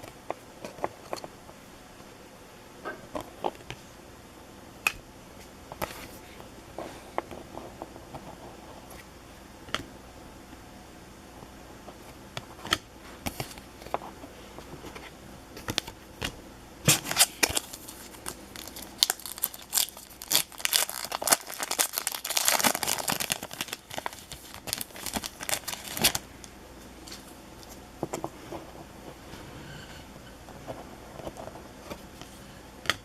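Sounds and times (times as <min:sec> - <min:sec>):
plastic wrapper crinkling and tearing: 0:17.0 - 0:26.3.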